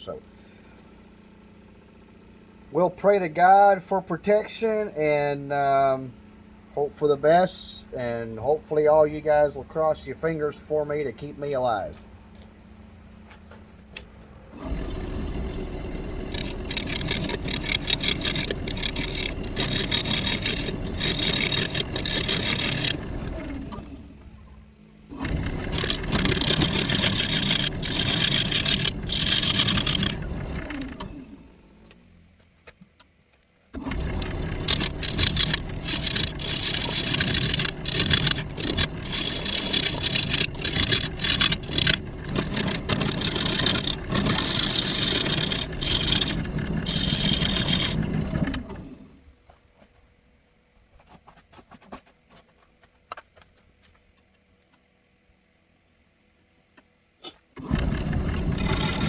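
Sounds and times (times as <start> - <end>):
lathe tool scraping wood: 0.9 - 12.1, 14.4 - 32.0, 33.8 - 49.3, 57.6 - 59.0.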